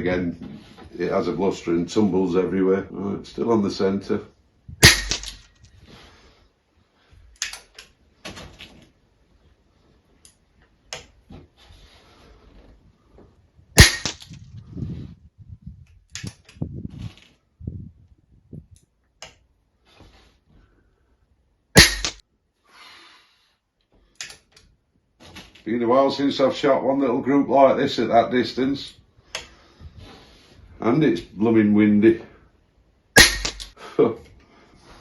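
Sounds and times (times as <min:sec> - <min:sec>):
air rifle shot: 0:04.8 - 0:05.4, 0:13.8 - 0:14.2, 0:21.8 - 0:22.2, 0:33.2 - 0:33.8.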